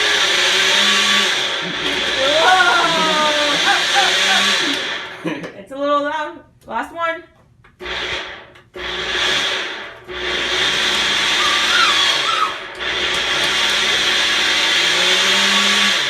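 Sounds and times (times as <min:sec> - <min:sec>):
blender running: 0:00.0 - 0:05.3, 0:07.8 - 0:16.0.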